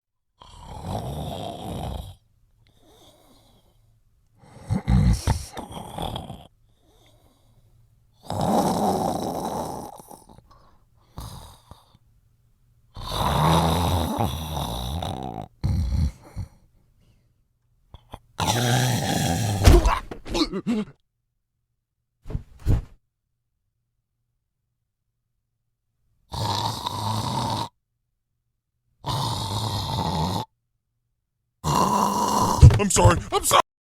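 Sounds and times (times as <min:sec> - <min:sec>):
person snoring: 0:00.4 - 0:02.2, 0:04.4 - 0:07.2, 0:08.2 - 0:10.4, 0:13.0 - 0:16.6, 0:18.1 - 0:20.9, 0:26.3 - 0:27.8, 0:29.0 - 0:30.5, 0:31.6 - 0:33.6.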